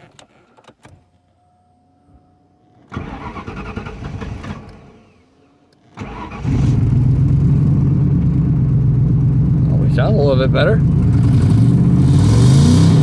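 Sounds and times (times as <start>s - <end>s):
engine starter cranking: 2.9s - 4.9s, 6.0s - 7.2s
car engine idling: 6.1s - 13.0s.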